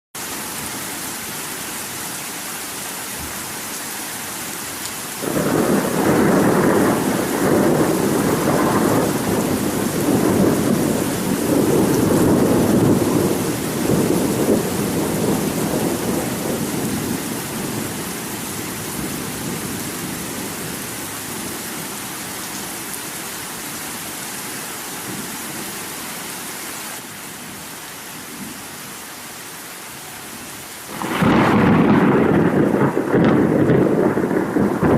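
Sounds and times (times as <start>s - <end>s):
steady rain: 0.2s - 34.9s
rolling thunder rumble: 5.2s - 20.8s, 30.9s - 34.9s.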